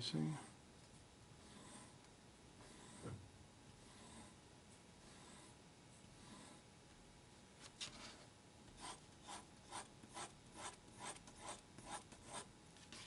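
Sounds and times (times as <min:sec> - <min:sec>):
pencil scratching on paper: 0:08.7 - 0:13.0.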